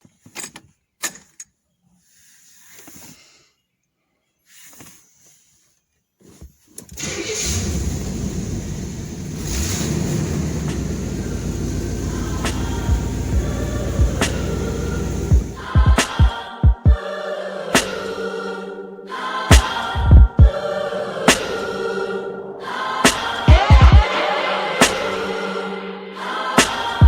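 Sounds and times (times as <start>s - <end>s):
vehicle engine rumbling: 7.0s - 15.7s.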